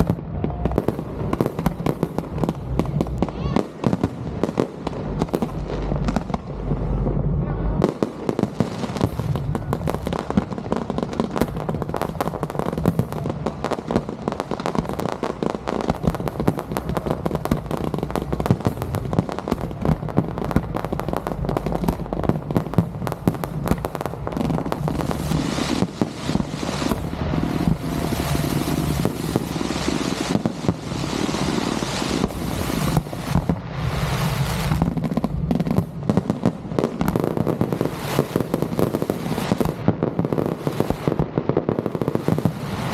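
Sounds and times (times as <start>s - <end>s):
fireworks booming and crackling: 0.0s - 42.9s.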